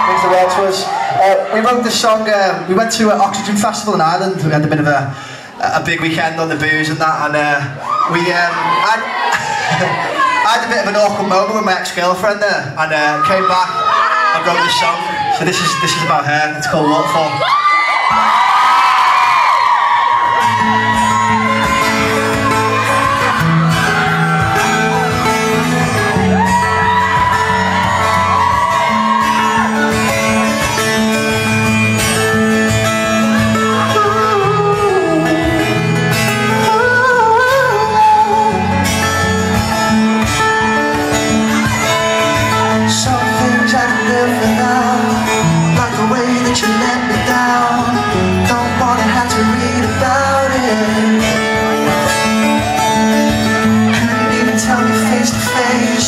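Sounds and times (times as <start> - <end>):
live pop-rock band: 17.0 - 56.0
man singing: 33.5 - 39.3, 42.5 - 56.0.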